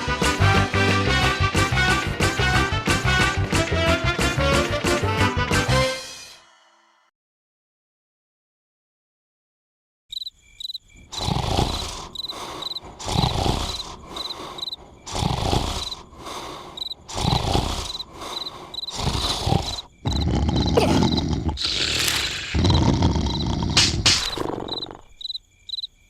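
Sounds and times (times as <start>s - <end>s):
crickets chirping: 10.1s - 26.0s
person snoring: 11.1s - 25.2s.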